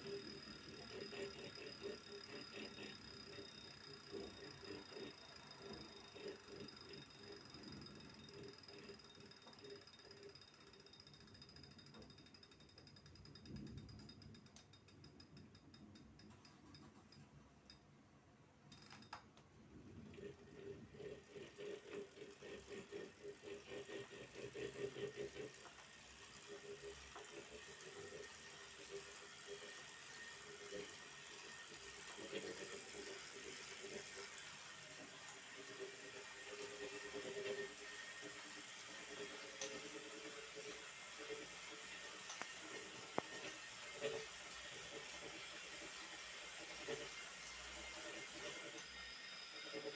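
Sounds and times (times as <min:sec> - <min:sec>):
rhythmic pulsing hum: 0:00.0 - 0:14.5
bike trainer mechanical ticking: 0:00.0 - 0:17.9, 0:18.7 - 0:49.9.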